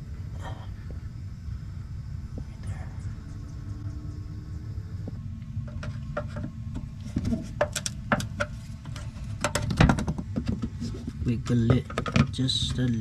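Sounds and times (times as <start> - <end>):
steady low rumble: 0.0 - 13.0
tools handling car parts: 5.7 - 12.9.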